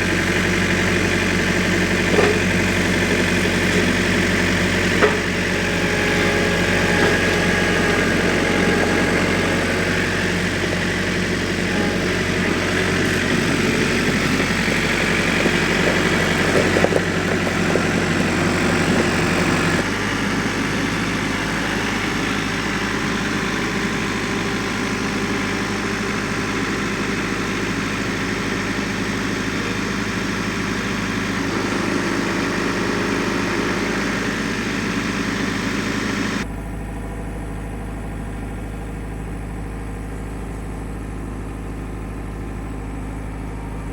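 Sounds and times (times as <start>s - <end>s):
tractor engine running: 0.0s - 43.9s.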